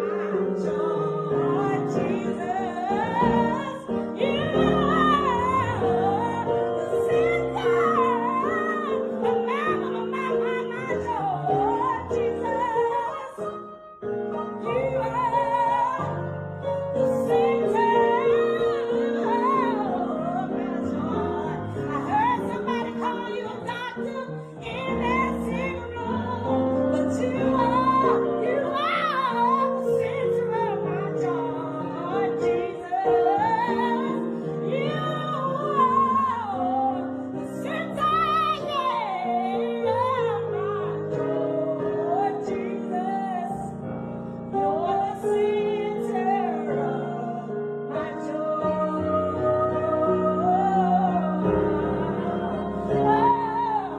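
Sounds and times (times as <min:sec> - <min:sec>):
woman singing gospel: 0:00.0 - 0:13.8, 0:17.2 - 0:43.7
piano accompaniment: 0:00.0 - 0:53.9.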